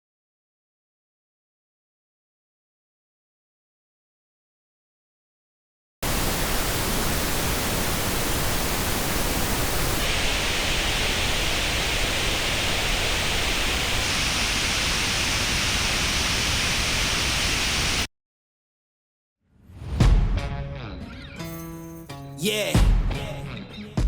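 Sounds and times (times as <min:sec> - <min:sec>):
pink noise hiss: 0:06.0 - 0:18.1.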